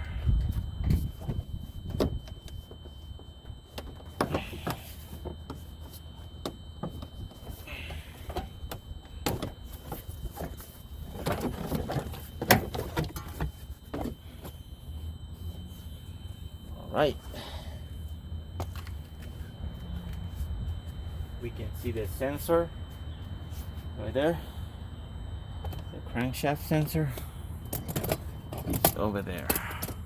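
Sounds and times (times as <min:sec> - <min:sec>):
low steady rumble: 0:00.0 - 0:30.0.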